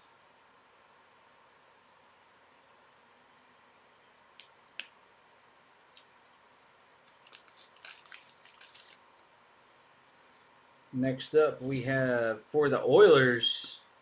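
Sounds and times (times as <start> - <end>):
crinkly rustling of cards: 7.0 - 10.6
cards clicking: 7.1 - 9.0.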